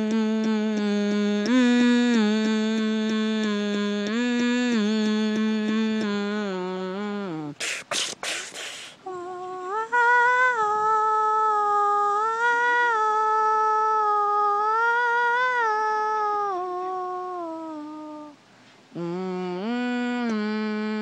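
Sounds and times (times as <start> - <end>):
person humming: 0.0 - 21.0
short hissing bursts: 7.6 - 9.0.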